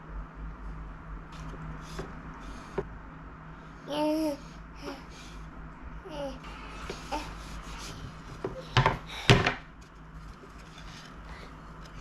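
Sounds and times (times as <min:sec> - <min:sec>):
baby vocalizing faintly: 0:03.9 - 0:05.1, 0:06.1 - 0:07.4.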